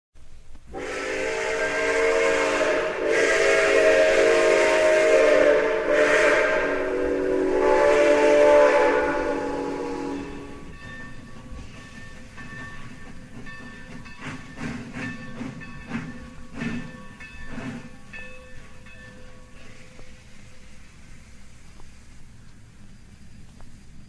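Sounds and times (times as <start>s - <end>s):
model train steam whistle: 0.7s - 10.8s
hiss of steam: 0.7s - 24.0s.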